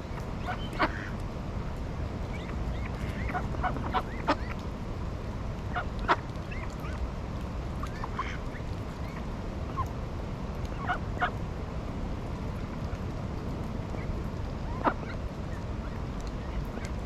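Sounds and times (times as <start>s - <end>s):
low background rumble: 0.0s - 17.0s
ducks honking and quacking: 0.4s - 1.2s, 2.3s - 4.6s, 7.8s - 9.9s, 10.7s - 11.3s, 14.7s - 15.2s.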